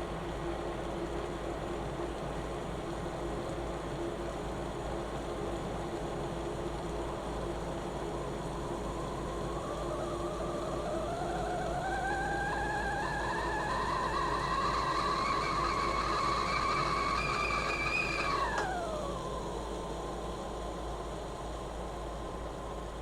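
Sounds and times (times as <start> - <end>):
kettle whistling: 8.2 - 20.3
steam hissing: 8.2 - 20.4.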